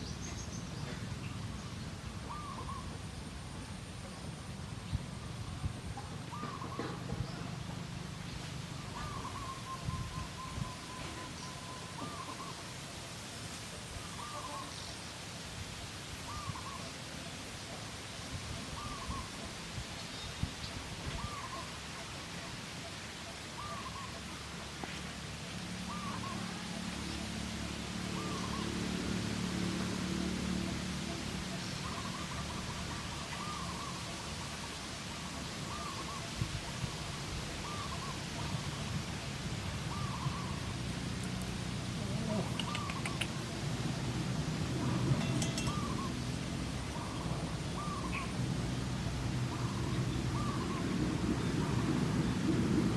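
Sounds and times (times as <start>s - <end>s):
steady outdoor hiss: 0.0s - 52.9s
bird calling: 2.2s - 3.0s, 6.2s - 7.6s, 8.8s - 12.7s, 14.1s - 14.9s, 23.2s - 24.4s, 25.9s - 27.2s, 31.8s - 34.6s, 35.6s - 36.4s, 37.6s - 38.7s, 39.9s - 40.7s, 41.8s - 43.6s, 44.8s - 48.4s, 49.5s - 51.0s.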